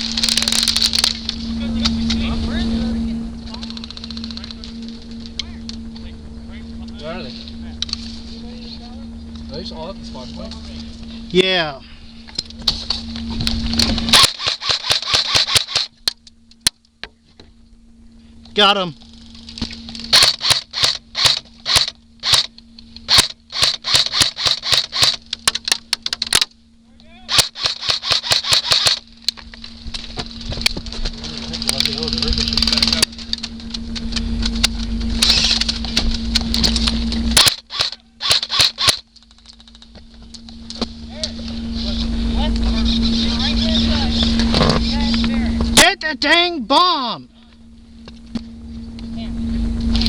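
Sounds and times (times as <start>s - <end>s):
airsoft guns firing: 14.1s - 15.9s, 20.1s - 22.5s, 23.1s - 25.6s, 27.3s - 29.0s, 37.4s - 39.0s.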